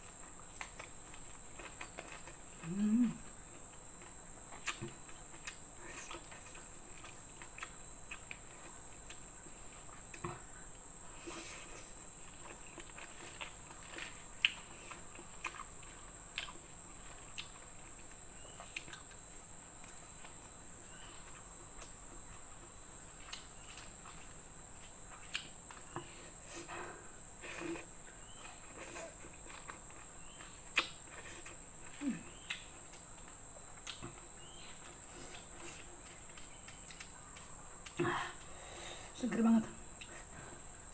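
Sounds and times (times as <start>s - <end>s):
chewing smacks: 3.5s - 9.3s, 12.3s - 19.2s, 27.6s - 38.0s
high-pitched insect trill: 11.8s - 38.0s.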